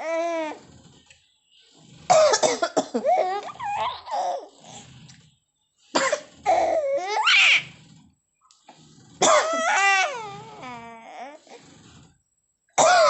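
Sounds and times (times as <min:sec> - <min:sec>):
person coughing: 0:02.1 - 0:04.5, 0:09.2 - 0:09.8, 0:12.8 - 0:13.0
baby laughing: 0:03.0 - 0:04.5.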